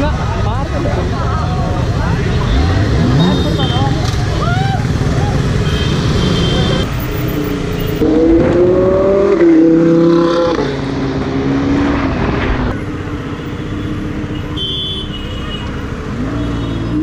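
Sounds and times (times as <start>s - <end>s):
sports car engine accelerating: 6.9s - 12.9s.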